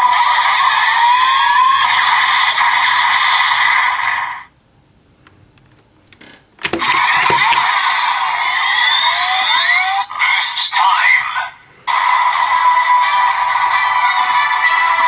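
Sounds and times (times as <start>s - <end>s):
plastic buckle clicks: 6.6s - 7.7s.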